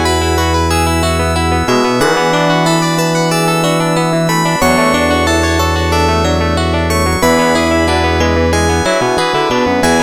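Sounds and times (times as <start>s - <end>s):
mobile phone ringtone melody: 1.7s - 7.8s.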